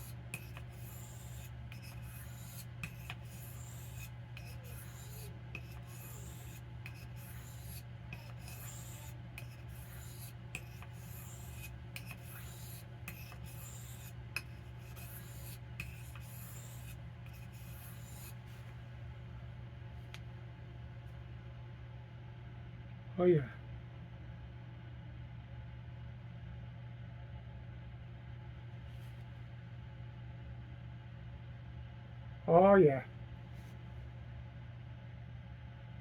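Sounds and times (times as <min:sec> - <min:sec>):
knife scraping on sharpening stone: 0:00.0 - 0:18.4
steady low hum: 0:00.0 - 0:36.0.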